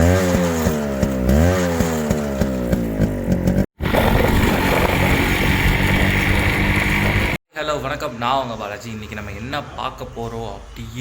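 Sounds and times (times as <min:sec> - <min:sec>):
two-stroke engine revving: 0:00.0 - 0:07.4.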